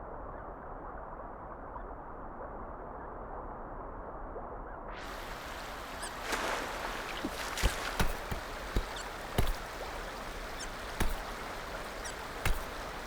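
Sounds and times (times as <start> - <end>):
background hiss: 5.0 - 13.0.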